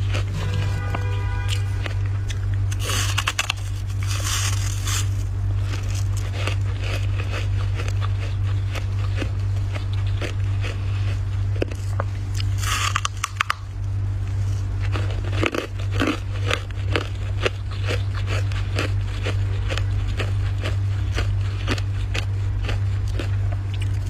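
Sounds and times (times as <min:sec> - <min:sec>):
rasping scrape: 0:00.0 - 0:05.2
crisp crunching of frost: 0:00.0 - 0:13.6
steady low hum: 0:00.0 - 0:24.0.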